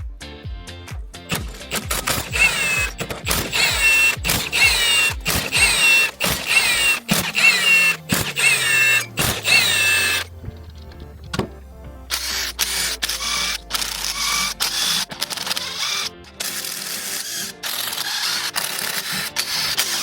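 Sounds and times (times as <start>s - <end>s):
background music with steady beat: 0.0s - 20.0s
low sliding bass tone: 8.0s - 15.1s.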